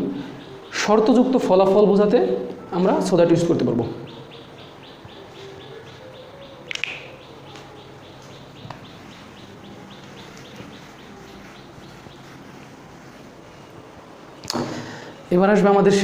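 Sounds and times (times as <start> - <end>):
small bird chirping: 3.9 - 13.8.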